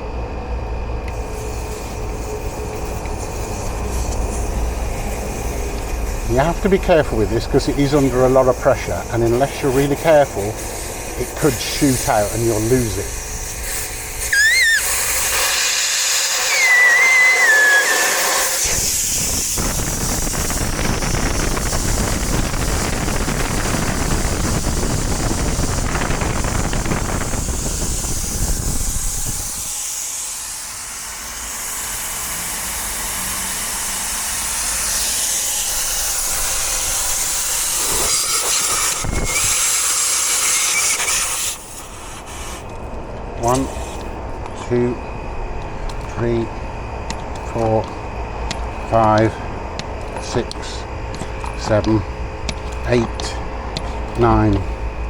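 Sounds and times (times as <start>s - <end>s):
compressed air hissing from tyre valve: 1.1s - 44.2s
whistling squeals: 13.7s - 19.0s, 38.8s - 41.4s.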